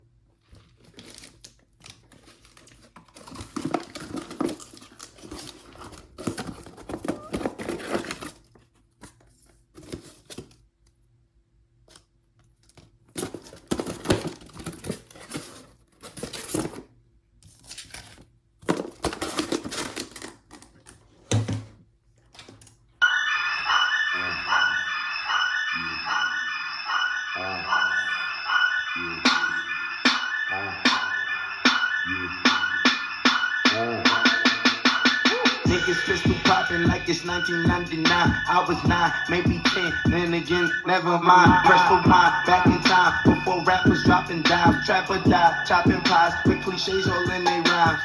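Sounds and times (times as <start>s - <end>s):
rustling and crinkling: 0.3s - 11.0s, 11.8s - 23.0s
loud music through speaker: 24.0s - 48.0s.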